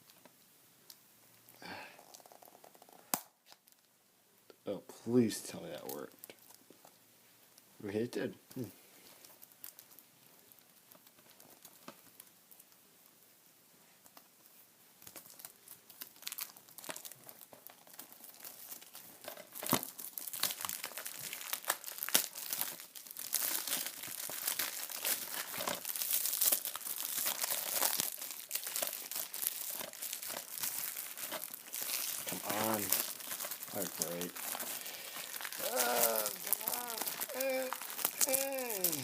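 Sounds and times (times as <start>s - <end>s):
plastic wrapping crinkling and tearing: 1.5s - 3.9s, 9.0s - 12.8s, 14.0s - 39.0s.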